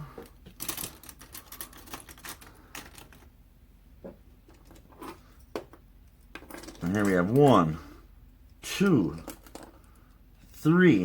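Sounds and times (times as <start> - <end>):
plastic pencils clicking and clattering: 0.2 - 3.3, 9.1 - 10.0.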